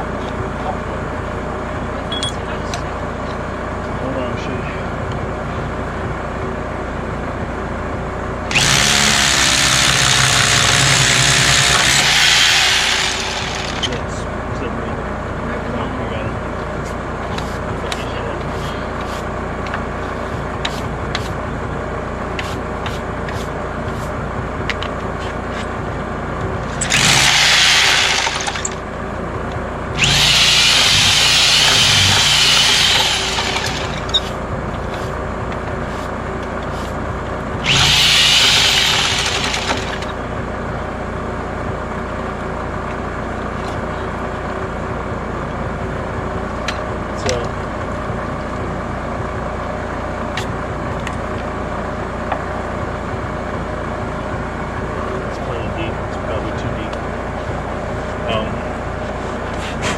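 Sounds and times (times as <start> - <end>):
hammer drill boring into concrete: 8.5 - 14.0, 26.7 - 28.8, 30.0 - 34.2, 37.6 - 40.1.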